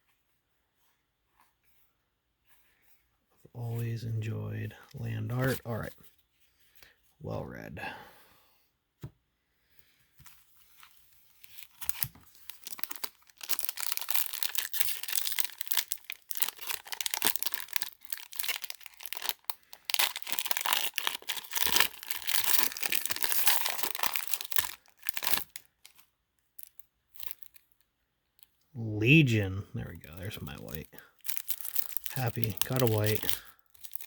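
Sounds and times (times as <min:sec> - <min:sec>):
foil wrapper crinkling: 0:10.7 - 0:27.8, 0:30.1 - 0:34.0.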